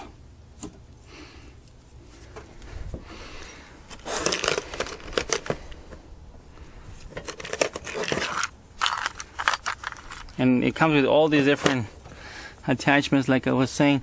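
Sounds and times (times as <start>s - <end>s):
metal tool parts clinking: 4.0s - 5.5s, 7.2s - 10.4s.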